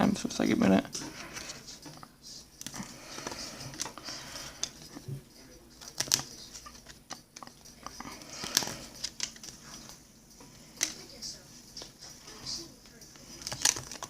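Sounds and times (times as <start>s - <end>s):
cards rustling: 0.9s - 14.0s
cards flicking: 5.8s - 10.0s, 10.7s - 11.1s, 11.8s - 14.0s.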